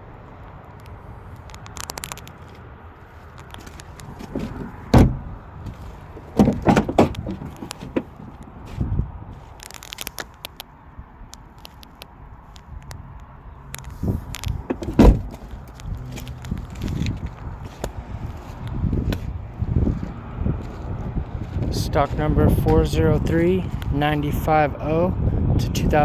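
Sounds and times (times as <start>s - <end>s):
heavy thumps and clattering knocks: 3.6s - 8.9s, 14.1s - 17.2s.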